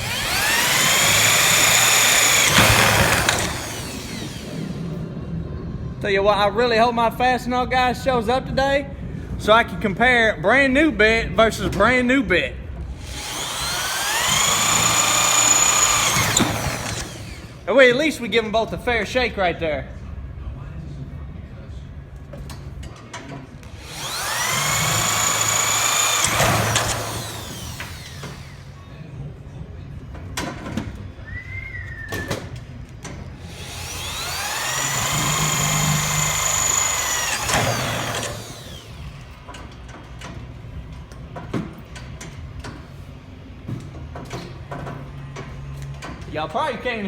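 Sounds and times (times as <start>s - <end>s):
power drill boring holes: 0.0s - 5.0s, 13.0s - 17.7s, 23.7s - 28.8s, 33.4s - 39.4s.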